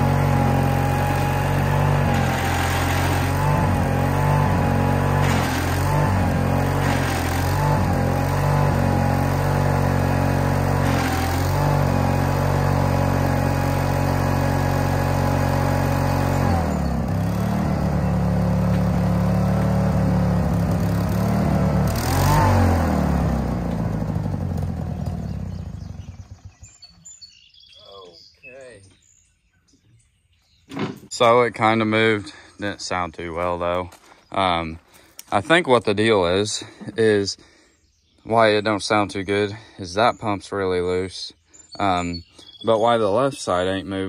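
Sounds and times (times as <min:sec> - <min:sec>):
skid steer engine running: 0:00.0 - 0:27.4.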